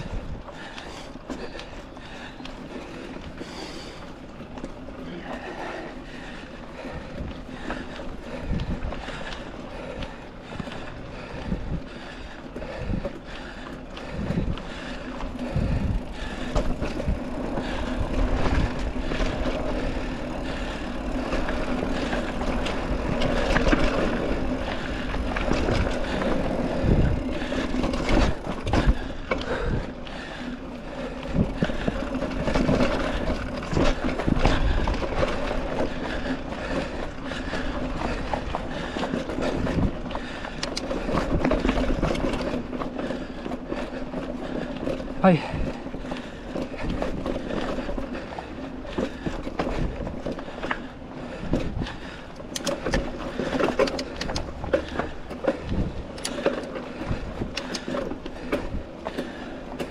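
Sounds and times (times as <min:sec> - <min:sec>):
bike rattling: 0:00.0 - 0:59.9
mountain bike on dirt trail: 0:00.0 - 0:59.9
wind on microphone: 0:15.4 - 0:19.5, 0:24.4 - 0:27.4.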